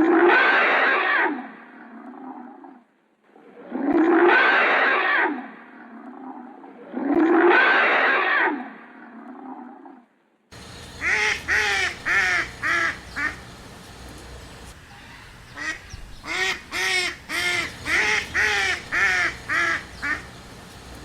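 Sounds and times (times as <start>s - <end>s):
duck quacking: 10.8s - 13.5s, 15.0s - 20.4s.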